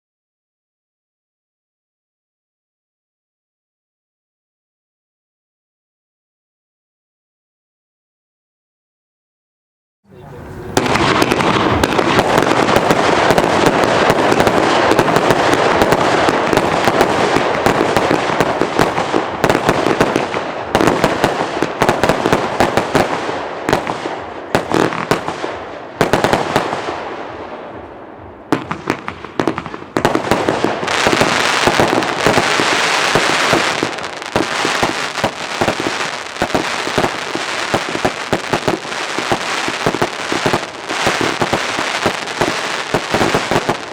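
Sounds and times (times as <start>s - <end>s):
firework sharp bangs: 10.6s - 43.9s
firework barrage of shots: 10.7s - 43.9s
firework hiss: 30.6s - 43.9s.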